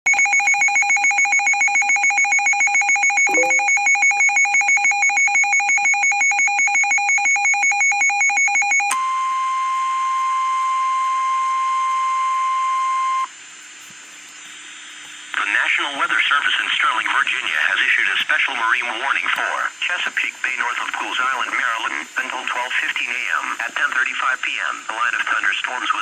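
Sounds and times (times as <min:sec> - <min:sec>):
rapid alarm beeping: 0:00.1 - 0:08.9
steady warning alarm tone: 0:00.1 - 0:08.9.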